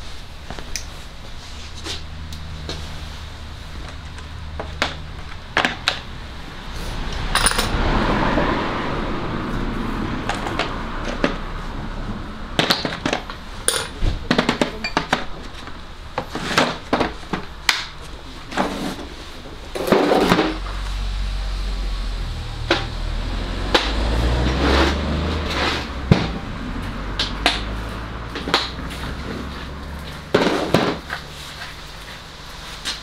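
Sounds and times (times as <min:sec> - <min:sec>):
metal tools clinking and knocking: 0:07.3 - 0:07.8, 0:13.6 - 0:14.0.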